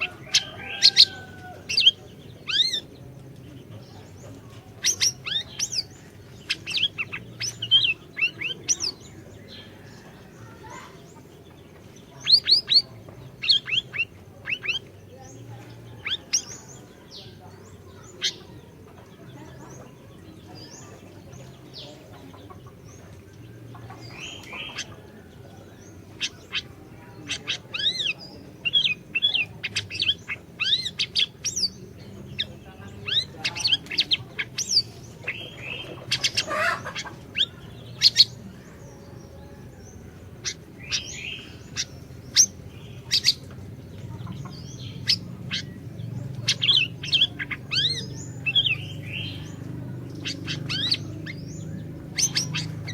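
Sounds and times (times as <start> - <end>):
bird chirping calls: 0.0 - 52.9.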